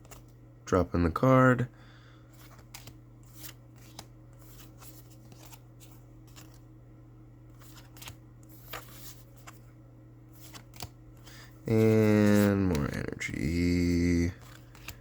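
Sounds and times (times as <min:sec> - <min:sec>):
steady low hum: 0:00.0 - 0:15.0
trading cards slapping and rustling: 0:02.2 - 0:06.7, 0:07.5 - 0:09.7, 0:10.3 - 0:15.0.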